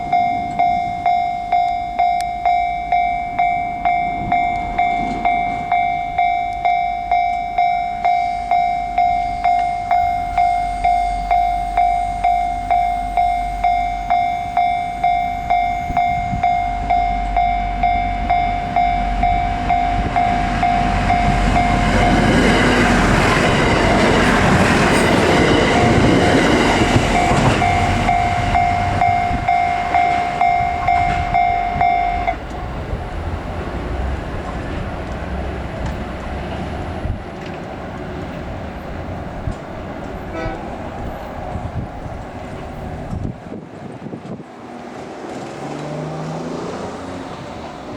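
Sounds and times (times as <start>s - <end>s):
level-crossing warning bell: 0.0s - 34.8s
train wheels clattering over rails: 3.0s - 7.5s, 15.9s - 47.9s.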